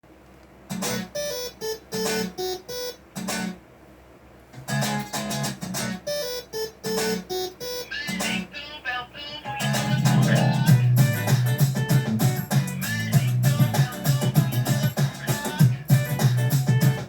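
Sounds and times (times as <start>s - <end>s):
acoustic guitar strummed chords: 8.1s - 8.5s, 9.5s - 17.0s.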